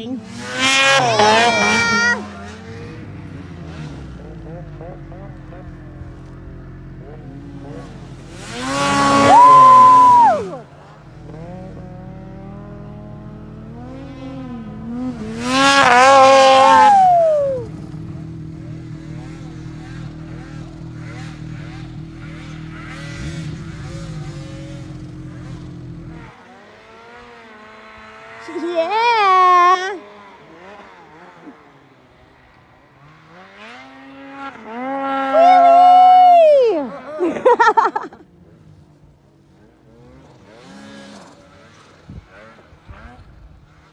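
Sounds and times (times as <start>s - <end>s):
snowmobile revving at full throttle: 0.0s - 43.9s
snowmobile idling: 4.2s - 12.6s.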